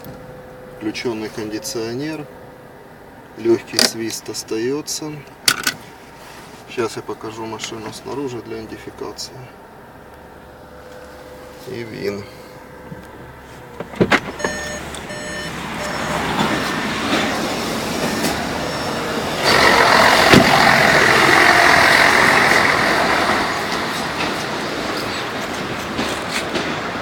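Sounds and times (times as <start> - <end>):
road traffic noise: 0.0 - 27.0
high beeps: 14.4 - 16.8, 18.0 - 19.1
vehicle passing loudly: 14.4 - 26.0.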